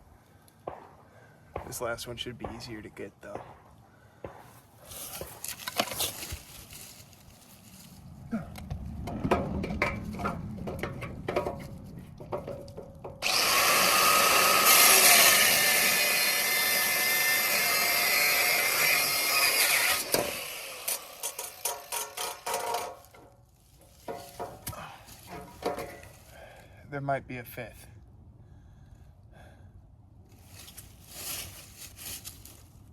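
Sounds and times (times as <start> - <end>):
metal clinking and knocking: 9.1 - 13.2, 21.2 - 23.3
metal rattling clanks: 9.1 - 13.2, 21.2 - 23.4
power tool running hard: 13.2 - 20.7.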